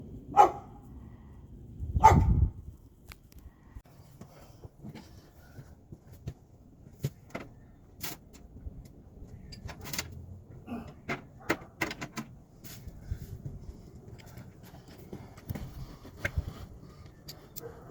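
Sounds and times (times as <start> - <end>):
dog barking: 0.3 - 0.7, 2.0 - 2.4, 17.6 - 17.9.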